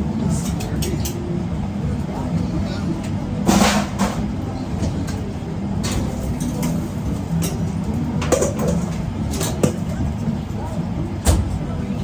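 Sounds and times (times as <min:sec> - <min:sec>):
low mechanical hum of equipment: 0:00.0 - 0:12.0
containers and utensils clattering: 0:07.4 - 0:10.0.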